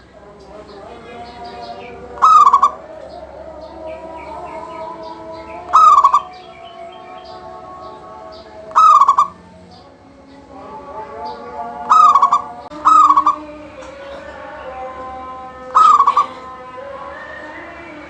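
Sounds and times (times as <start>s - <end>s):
dove cooing: 1.1s - 7.4s, 8.6s - 9.6s, 11.8s - 14.3s, 15.6s - 17.4s
faint bird chirps: 3.8s - 7.4s, 11.9s - 13.5s, 15.8s - 16.4s.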